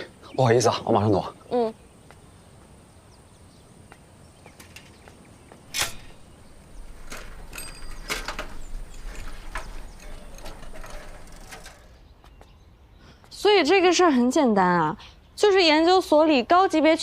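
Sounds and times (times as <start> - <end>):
bicycle rolling and rattling: 5.8 - 12.2.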